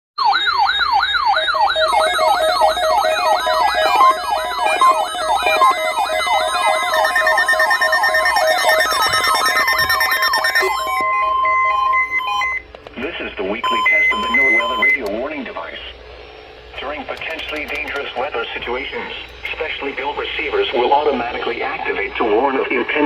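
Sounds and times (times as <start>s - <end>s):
siren-like tone sweeping down: 0.2s - 12.6s
steady electronic tone: 0.6s - 12.6s
quick electronic beeping: 1.4s - 12.6s, 13.6s - 15.0s.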